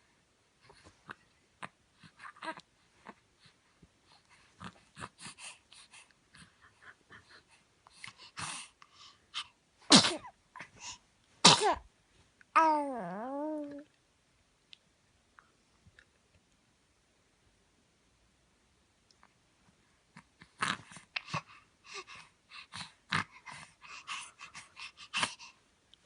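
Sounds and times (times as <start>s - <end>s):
faint breathy sounds: 0.0s - 11.2s, 19.1s - 26.0s
baby sneezing: 9.9s - 10.4s, 11.4s - 11.8s.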